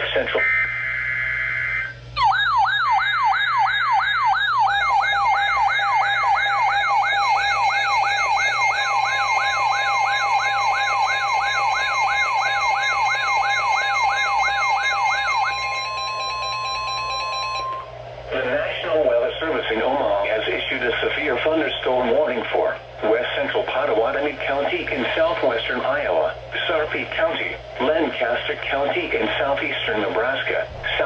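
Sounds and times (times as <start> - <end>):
steady higher tones: 0.0 - 31.0
electronic siren wail: 0.2 - 18.0.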